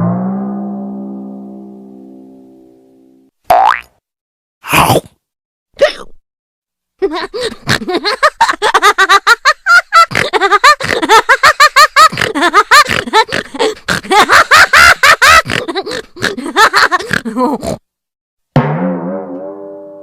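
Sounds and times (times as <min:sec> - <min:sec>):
cartoon laughter: 0:07.0 - 0:17.8.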